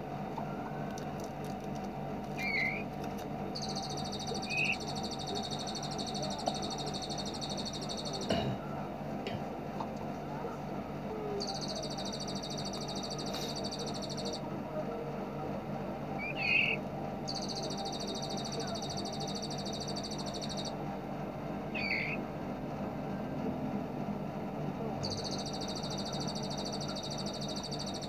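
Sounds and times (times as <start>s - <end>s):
steady low hum: 0.0s - 28.0s
songbird rattling trill: 2.4s - 2.9s, 3.6s - 8.3s, 11.4s - 14.4s, 16.2s - 20.7s, 21.8s - 22.2s, 25.0s - 28.0s.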